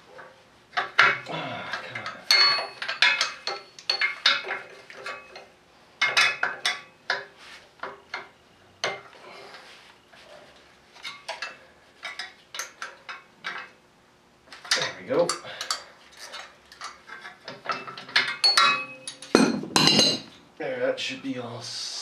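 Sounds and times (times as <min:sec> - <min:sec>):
wrench clinking against metal: 0:01.0 - 0:06.9, 0:17.7 - 0:20.3.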